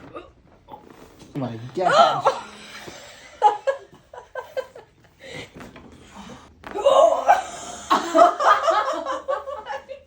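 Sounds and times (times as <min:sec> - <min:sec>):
laughter: 0:03.2 - 0:04.9, 0:07.8 - 0:10.0.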